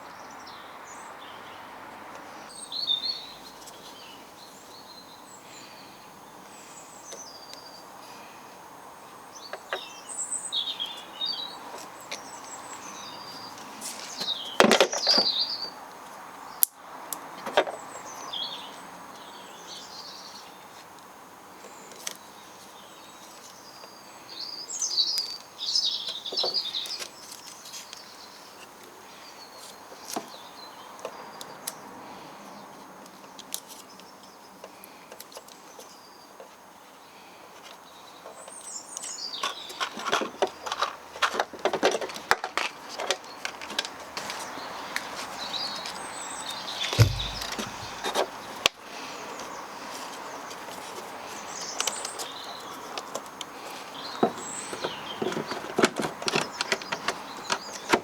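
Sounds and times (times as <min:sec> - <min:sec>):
small birds chirping: 0:00.0 - 0:16.7, 0:17.7 - 0:20.9, 0:21.5 - 0:41.1, 0:43.0 - 0:58.0
clattering knocks: 0:47.0 - 0:48.1
sharp clicks and knocks: 0:47.0 - 0:48.2.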